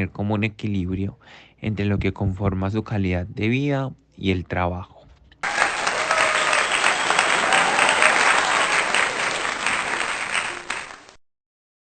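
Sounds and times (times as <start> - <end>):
hands clapping: 5.4 - 11.2.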